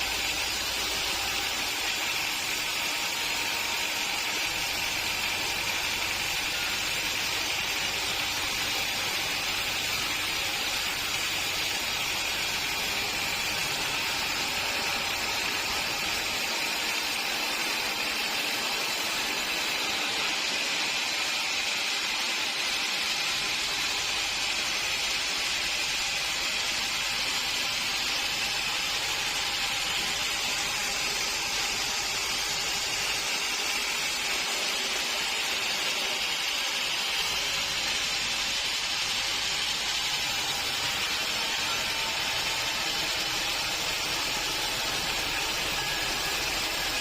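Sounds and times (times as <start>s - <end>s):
sawmill machinery hissing: 0.0s - 47.0s.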